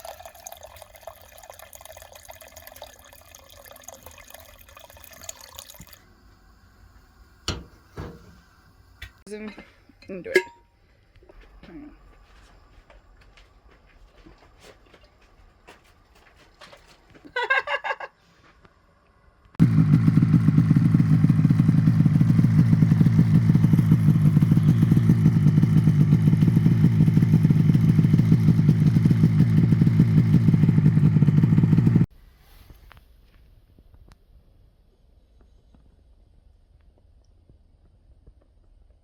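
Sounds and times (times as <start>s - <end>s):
engine running: 19.6s - 32.1s.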